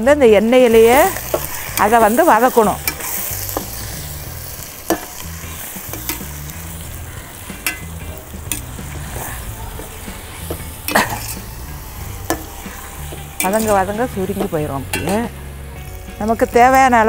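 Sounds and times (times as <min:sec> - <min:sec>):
food sizzling in hot oil: 0:00.0 - 0:17.0
spatula clicking against pan: 0:05.9 - 0:06.3, 0:08.5 - 0:08.7.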